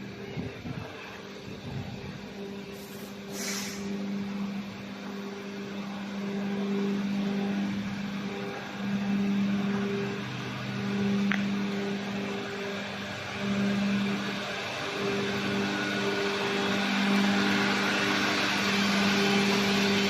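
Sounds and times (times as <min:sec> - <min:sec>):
factory machinery humming: 0:00.0 - 0:20.0
short hiss: 0:02.8 - 0:03.9.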